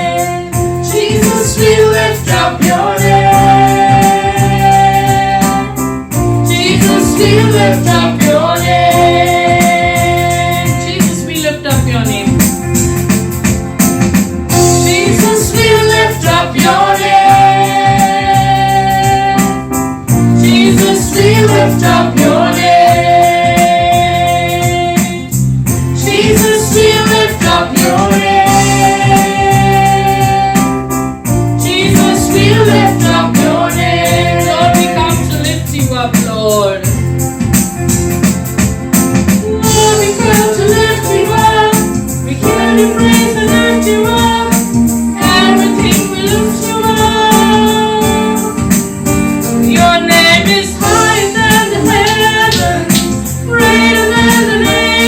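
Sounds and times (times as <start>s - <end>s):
person singing worship song: 0.0s - 5.8s, 39.4s - 48.6s, 49.6s - 55.0s
keyboard accompaniment: 0.0s - 55.0s.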